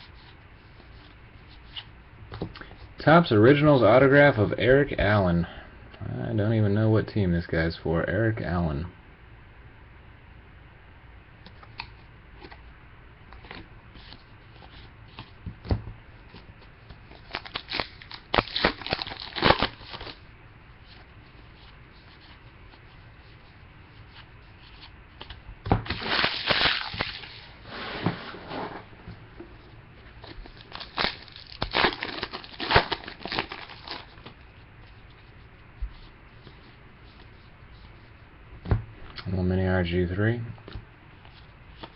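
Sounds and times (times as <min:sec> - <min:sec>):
wrappers torn and crinkled: 0:17.1 - 0:20.2, 0:25.9 - 0:27.5, 0:30.3 - 0:34.2.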